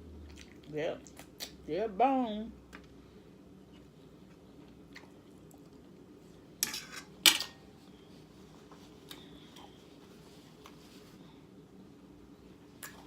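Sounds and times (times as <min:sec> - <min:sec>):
cutlery clattering against a dish: 0:06.6 - 0:07.6.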